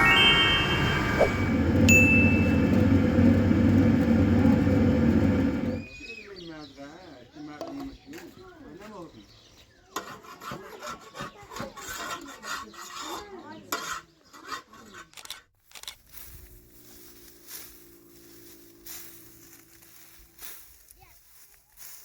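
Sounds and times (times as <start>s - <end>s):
hum of low tones: 0.0s - 5.8s
sickle cutting dry stalks: 15.6s - 22.0s.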